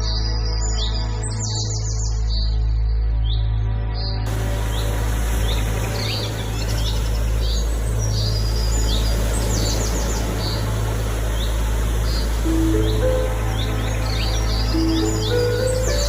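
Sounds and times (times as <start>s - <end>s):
small birds chirping: 3.4s - 16.0s
steady low rumble: 4.3s - 16.0s.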